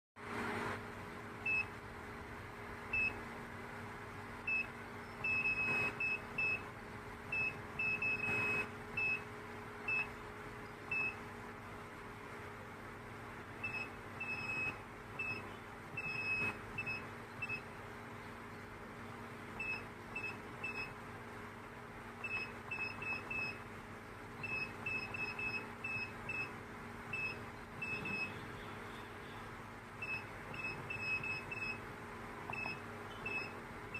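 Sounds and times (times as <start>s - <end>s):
keypad beeps: 1.5s - 1.7s, 3.0s - 3.2s, 4.5s - 6.7s, 7.3s - 9.3s, 9.9s - 10.1s, 10.9s - 11.2s, 13.6s - 17.7s, 19.6s - 21.0s, 22.2s - 23.7s, 24.4s - 28.5s, 30.0s - 31.8s, 32.5s - 33.6s.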